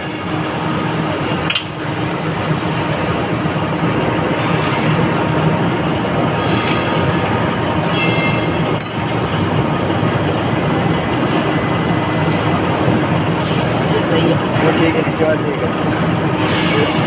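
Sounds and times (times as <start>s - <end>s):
loud mechanical noise: 0.0s - 17.0s
sharp clink: 8.0s - 9.2s.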